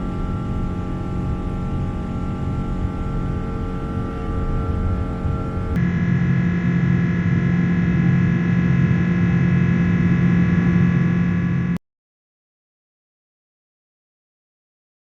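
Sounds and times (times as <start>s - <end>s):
airliner cabin roar: 0.0s - 11.8s
jet engine whine: 0.0s - 11.8s.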